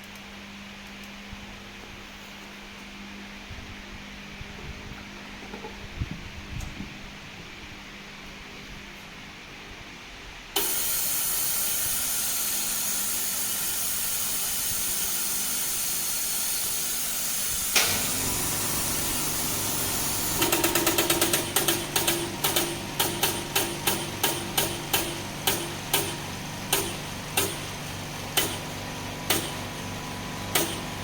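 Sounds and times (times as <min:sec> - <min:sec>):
fast mechanical clicking: 0:10.6 - 0:31.0
hiss of air from tester: 0:10.6 - 0:31.0
sharp click: 0:17.7 - 0:18.2, 0:20.4 - 0:27.7, 0:28.4 - 0:28.6, 0:29.3 - 0:29.6, 0:30.5 - 0:30.9.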